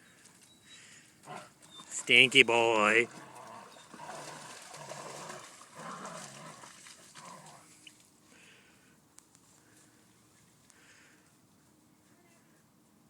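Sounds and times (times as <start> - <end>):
dog growling: 1.3 - 1.5, 3.1 - 7.7.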